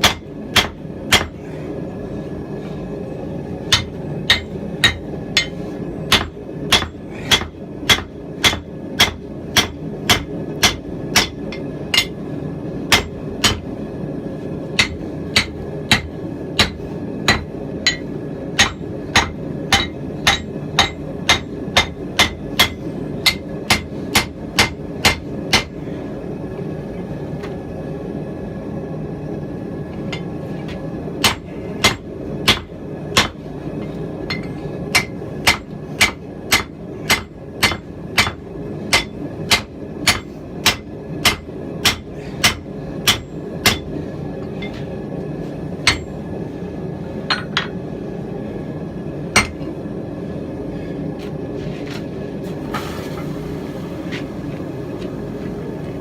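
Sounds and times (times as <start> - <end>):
hammer striking anvil: 0.0 - 1.4, 3.7 - 12.2, 12.9 - 13.7, 14.8 - 25.7, 34.3 - 43.9, 45.8 - 46.2, 49.4 - 49.6.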